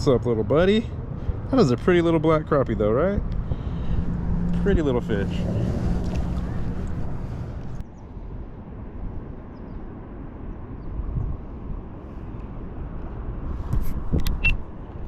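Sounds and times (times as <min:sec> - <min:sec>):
low outdoor rumble: 0:00.0 - 0:10.6.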